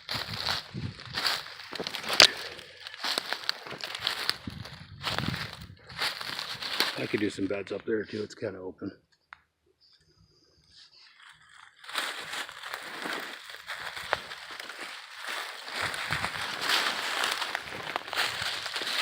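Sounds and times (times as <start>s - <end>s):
twigs snapping: 0.0s - 7.3s, 11.8s - 19.0s
branches scraping: 0.0s - 7.4s, 11.0s - 19.0s
footsteps crunching dry leaves: 0.0s - 7.5s, 11.0s - 19.0s.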